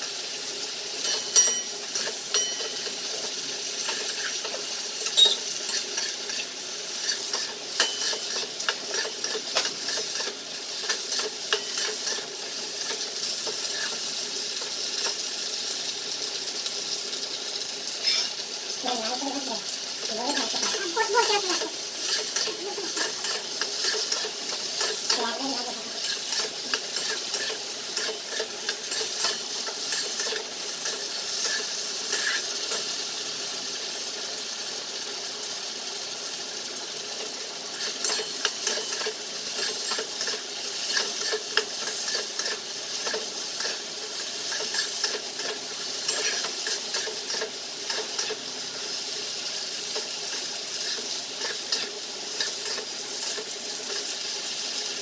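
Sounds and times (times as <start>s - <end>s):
chicken deep-frying in oil: 0.0s - 55.0s
metal utensil clicking on pan: 1.0s - 15.3s, 20.3s - 32.9s, 37.7s - 43.8s, 44.4s - 48.4s, 49.9s - 54.2s.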